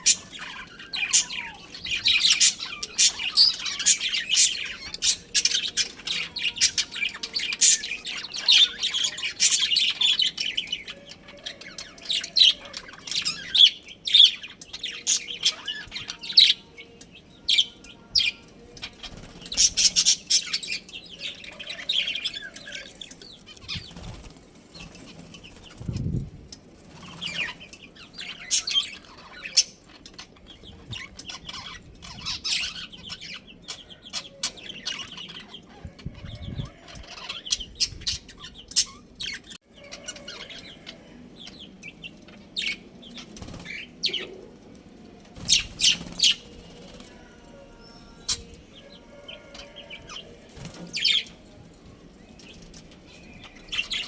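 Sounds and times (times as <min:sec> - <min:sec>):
budgerigars chirping: 0:00.0 - 0:16.6, 0:17.3 - 0:24.2, 0:27.0 - 0:42.0.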